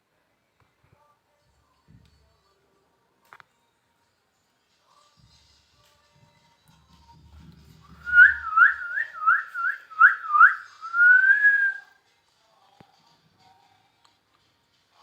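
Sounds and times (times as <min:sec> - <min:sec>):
person whistling rising notes: 0:08.0 - 0:11.9.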